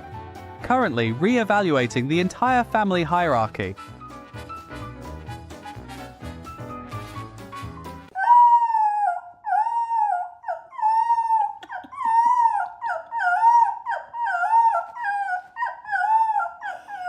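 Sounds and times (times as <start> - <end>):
dog whining: 8.1 - 17.0.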